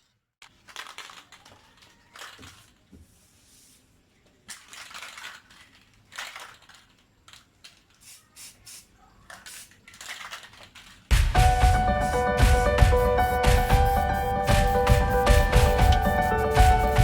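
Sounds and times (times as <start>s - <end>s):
aerosol can hissing bursts: 8.0s - 9.8s, 11.1s - 17.0s
background music: 11.1s - 17.0s.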